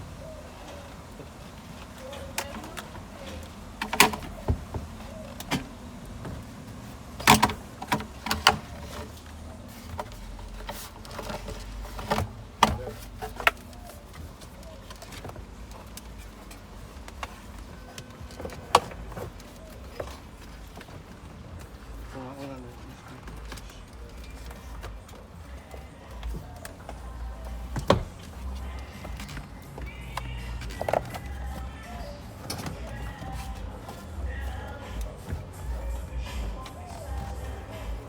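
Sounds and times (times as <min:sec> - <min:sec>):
tools clicking and knocking: 0:02.1 - 0:21.0.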